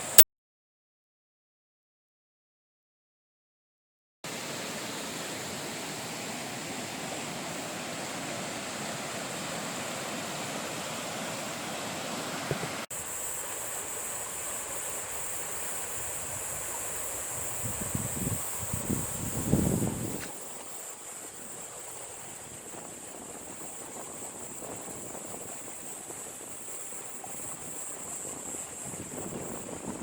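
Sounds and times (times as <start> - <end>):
steady high hiss: 12.9 - 30.0
wind gusts on microphone: 16.1 - 20.5, 21.3 - 30.0.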